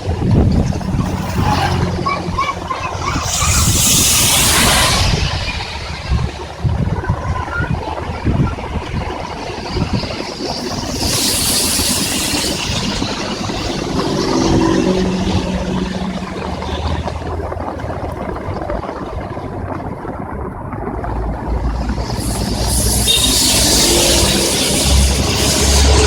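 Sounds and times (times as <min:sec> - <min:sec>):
heavy rain: 0:00.0 - 0:26.0
vehicle engine passing: 0:00.2 - 0:06.6, 0:10.4 - 0:18.3, 0:21.4 - 0:26.0
tyre spray hiss: 0:02.9 - 0:06.4, 0:09.6 - 0:16.9, 0:21.6 - 0:26.0.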